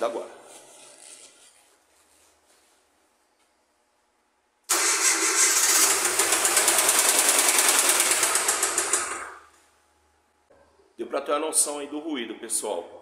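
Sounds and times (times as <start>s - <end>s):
car engine knocking: 5.8s - 9.2s.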